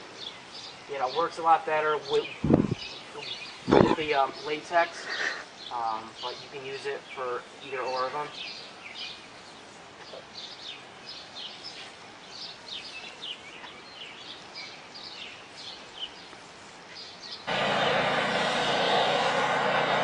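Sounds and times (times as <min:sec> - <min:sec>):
small birds chirping: 0:00.0 - 0:18.1
faint outdoor background noise: 0:00.0 - 0:20.0
loud steady machine noise: 0:17.5 - 0:20.0.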